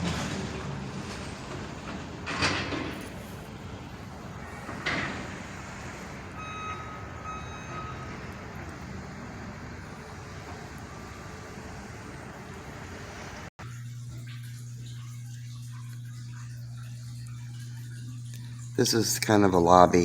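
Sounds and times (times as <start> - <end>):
outdoor traffic noise: 0.0 - 13.8
vehicle reversing beeper: 4.3 - 13.3.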